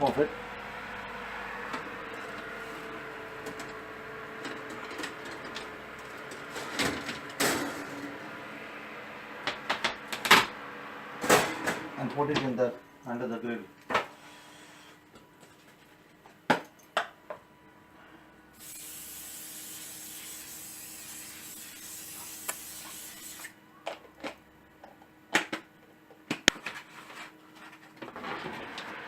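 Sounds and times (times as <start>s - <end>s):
steady hiss: 18.6s - 23.5s.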